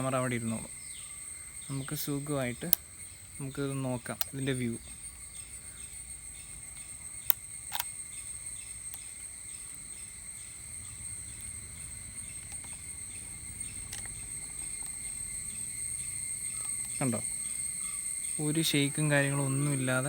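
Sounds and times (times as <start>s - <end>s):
crickets chirping: 0.0s - 20.0s
sharp click: 7.2s - 7.9s.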